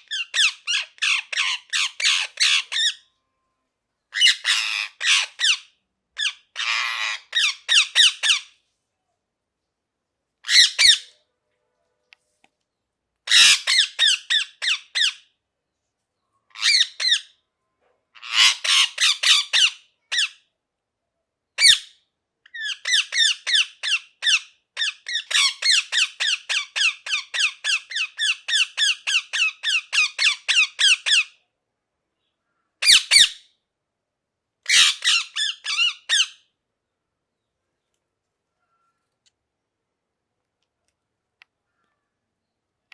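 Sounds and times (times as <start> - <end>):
parrot squawking: 0.0 - 3.1, 4.2 - 8.5, 10.4 - 11.1, 13.3 - 15.2, 16.5 - 17.4, 18.2 - 20.4, 21.6 - 21.9, 22.5 - 31.4, 32.8 - 33.4, 34.7 - 36.5.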